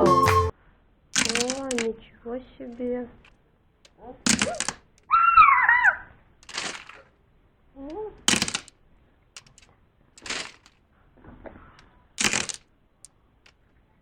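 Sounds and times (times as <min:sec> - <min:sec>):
child squealing: 0:05.1 - 0:06.0.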